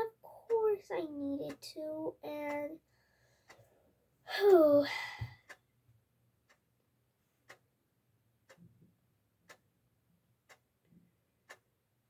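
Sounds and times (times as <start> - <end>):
clock ticking: 0.0 - 2.9, 4.3 - 5.7, 7.4 - 7.7, 8.5 - 8.8, 9.4 - 9.7, 10.4 - 10.7, 11.4 - 11.7.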